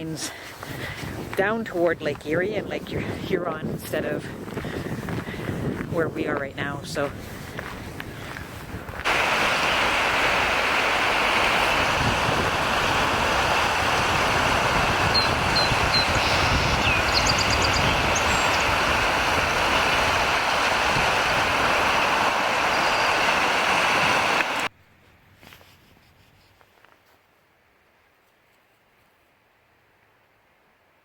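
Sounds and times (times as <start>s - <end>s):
river rushing: 9.0s - 24.7s.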